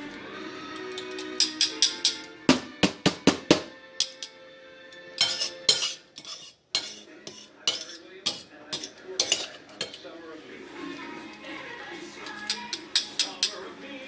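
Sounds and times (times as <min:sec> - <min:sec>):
utensils clinking against dishes: 0:00.7 - 0:02.4, 0:04.0 - 0:04.4, 0:05.0 - 0:10.2, 0:12.2 - 0:13.8.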